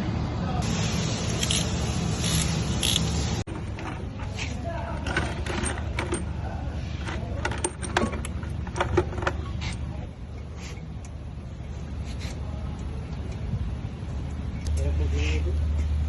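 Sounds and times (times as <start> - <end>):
metal tools clinking: 5.0 - 6.4.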